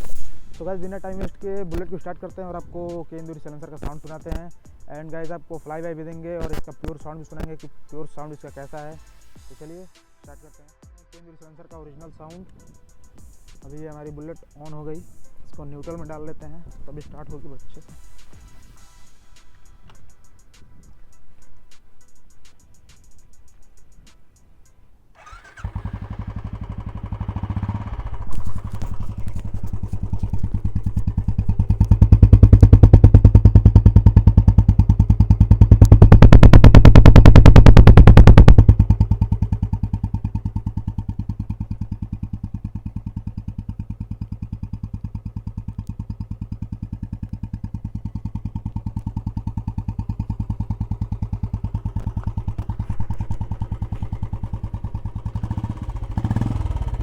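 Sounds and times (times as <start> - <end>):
motorcycle engine idling and revving: 0.0 - 9.8, 11.8 - 57.0.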